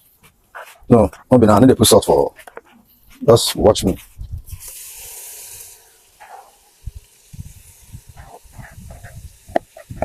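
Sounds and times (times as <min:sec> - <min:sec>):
hot oil sizzling: 0:04.4 - 0:10.0.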